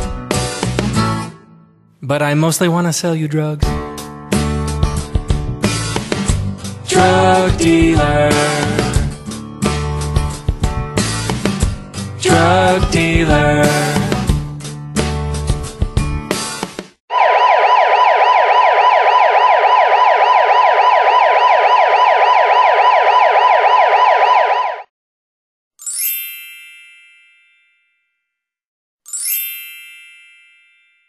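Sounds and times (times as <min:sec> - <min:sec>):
electronic siren ringtone: 0:17.1 - 0:24.9
bell-like dings: 0:25.8 - 0:28.2, 0:29.1 - 0:31.0.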